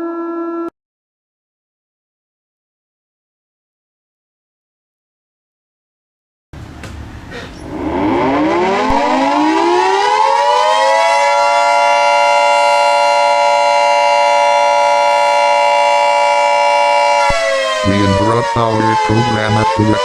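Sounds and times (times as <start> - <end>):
siren winding up: 7.6 - 20.0.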